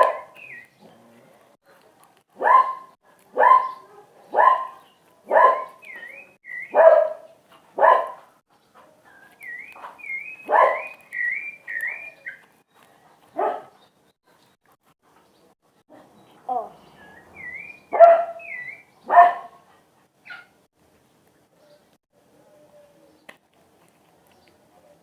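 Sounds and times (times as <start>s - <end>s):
high chirping calls: 0.0s - 0.9s, 3.4s - 7.4s, 9.1s - 14.6s, 16.0s - 19.6s
dog barking: 0.0s - 1.0s, 1.6s - 5.8s, 6.6s - 8.4s, 9.7s - 11.0s, 13.3s - 14.4s, 17.9s - 19.6s.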